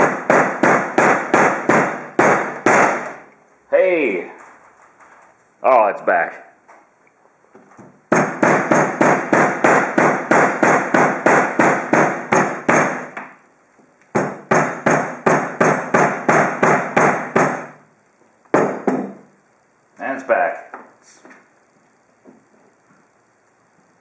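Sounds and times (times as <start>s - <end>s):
hammer striking a cable: 0.0s - 3.2s, 8.1s - 13.4s, 14.2s - 17.7s.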